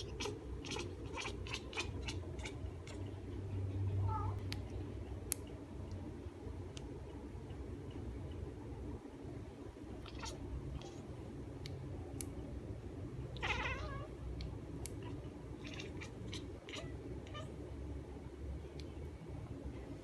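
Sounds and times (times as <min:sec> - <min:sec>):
cat chirps and clicks: 0:00.0 - 0:03.1, 0:10.0 - 0:11.0, 0:13.3 - 0:17.5
cat meowing: 0:10.0 - 0:10.4, 0:13.4 - 0:14.1, 0:15.0 - 0:17.5.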